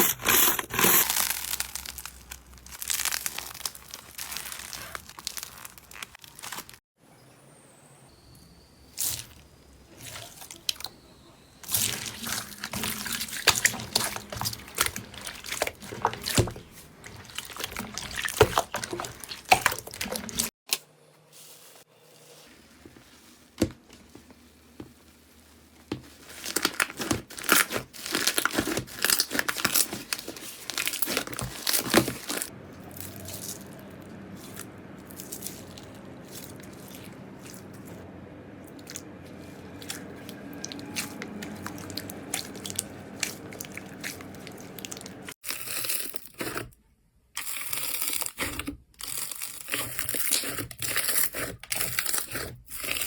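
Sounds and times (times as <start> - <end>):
slime crackling and popping: 0.7 - 6.8, 26.3 - 33.8.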